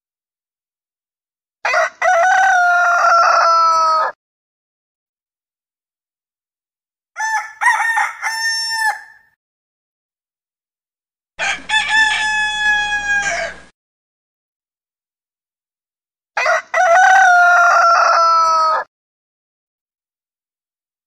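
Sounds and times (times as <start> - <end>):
rooster crowing: 1.6 - 4.2, 7.2 - 9.4, 11.4 - 13.7, 16.4 - 18.9.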